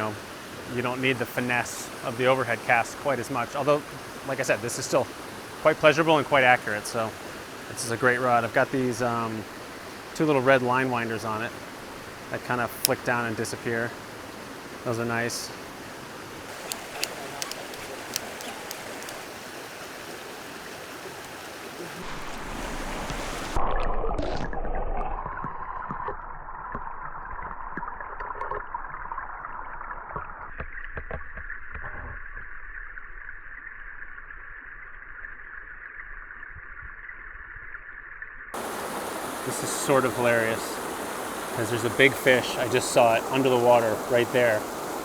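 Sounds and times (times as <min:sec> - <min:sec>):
creek running over rocks: 0:00.0 - 0:23.6, 0:38.6 - 0:45.0
underwater rushing and gurgling: 0:00.0 - 0:30.6, 0:38.6 - 0:45.0
splash: 0:16.5 - 0:29.1, 0:38.6 - 0:45.0.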